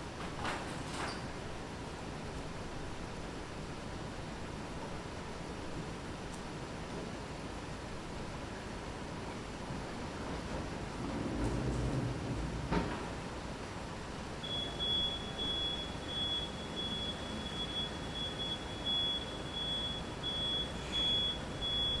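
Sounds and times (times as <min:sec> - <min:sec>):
city street traffic: 0:09.8 - 0:22.0
pulsing electronic beep: 0:14.5 - 0:22.0.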